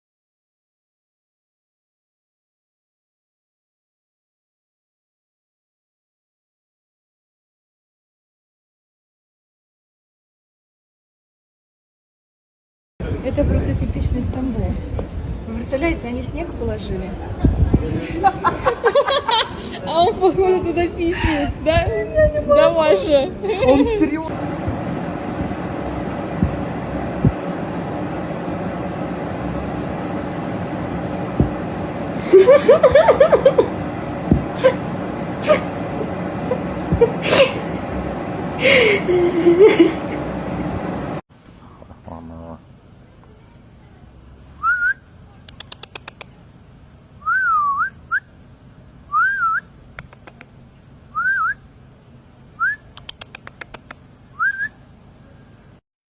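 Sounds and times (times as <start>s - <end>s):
street traffic rumble: 13.0s - 55.8s
low thumps: 13.2s - 25.6s
whistled upward calls: 44.6s - 45.1s, 47.2s - 48.4s, 49.1s - 49.8s, 51.1s - 51.7s, 52.6s - 53.0s, 54.3s - 54.8s
sharp clicks: 45.4s - 46.4s, 49.9s - 50.6s, 52.9s - 54.0s.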